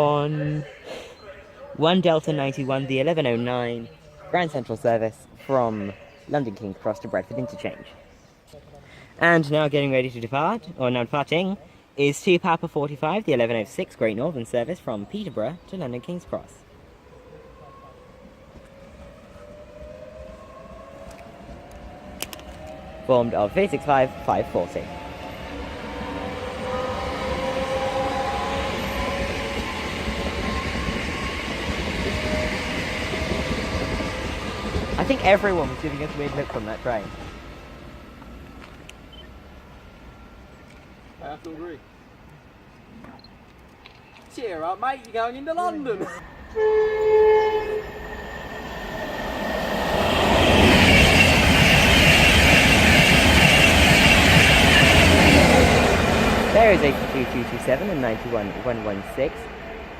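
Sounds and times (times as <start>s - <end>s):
electric train traction whine: 17.0s - 40.5s, 46.2s - 59.9s
train wheels rumbling on rail: 18.2s - 39.0s, 47.4s - 59.9s
train horn: 32.0s - 34.1s, 46.4s - 48.1s.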